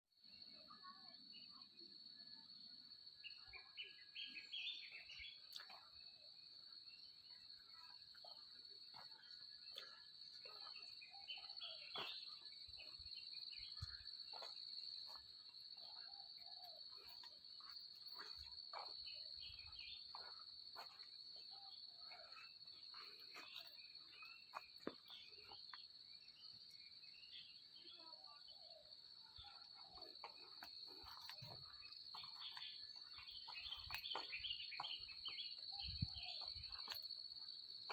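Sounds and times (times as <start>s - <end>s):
insect chorus drone: 0.2s - 37.9s.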